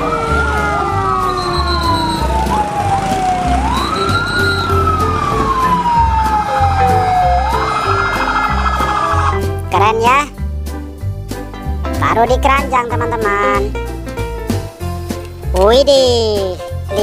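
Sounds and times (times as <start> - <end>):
wailing siren: 0.0 - 9.4
low repeating beat: 0.0 - 9.7.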